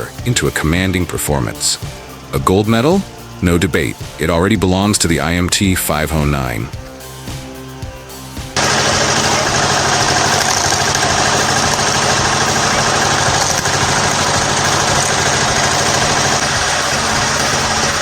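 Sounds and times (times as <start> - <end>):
firewood processor engine running: 8.6 - 18.0.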